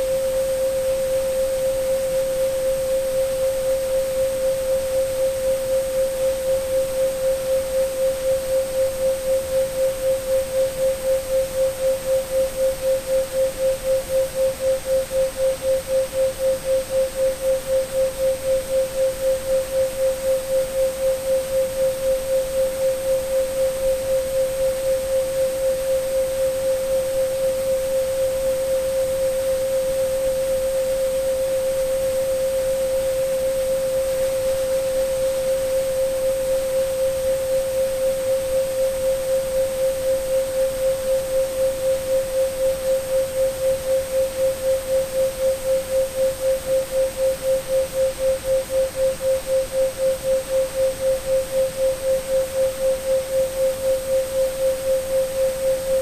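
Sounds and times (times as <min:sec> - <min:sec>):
faint even hiss: 0:00.0 - 0:56.0
pulsing sine tone: 0:00.0 - 0:56.0.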